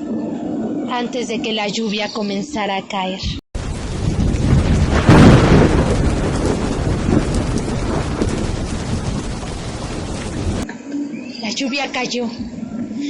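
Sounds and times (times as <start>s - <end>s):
heavy rain: 3.6s - 10.6s
low rumbling thunder: 3.6s - 10.7s.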